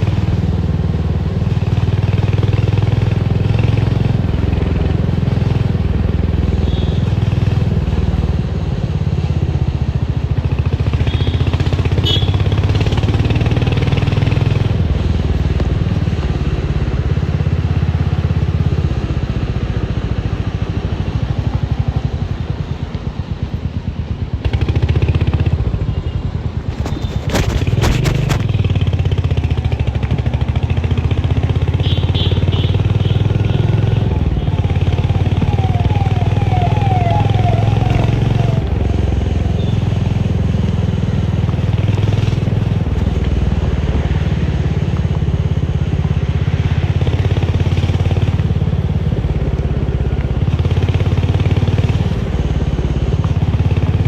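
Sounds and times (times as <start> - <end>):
motorcycle engine thumping: 26.6 - 28.8
short clatter: 26.7 - 28.6.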